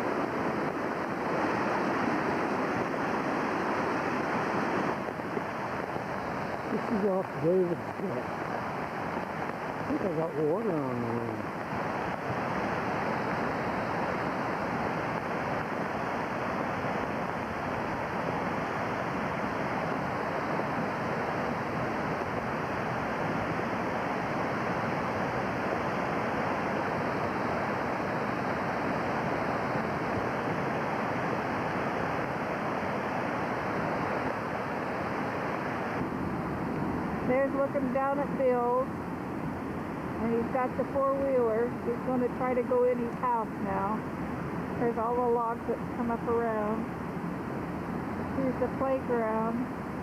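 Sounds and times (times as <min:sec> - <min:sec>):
river rushing: 0:00.0 - 0:50.0.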